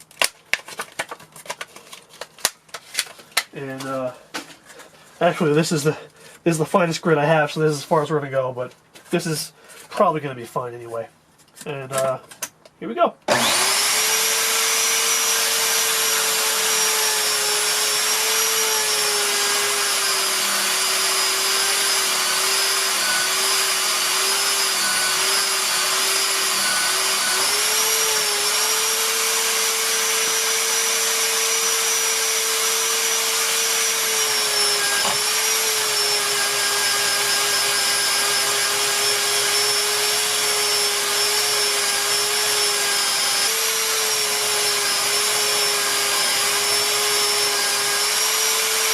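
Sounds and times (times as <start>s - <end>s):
electric polisher motor hum: 13.3s - 48.9s.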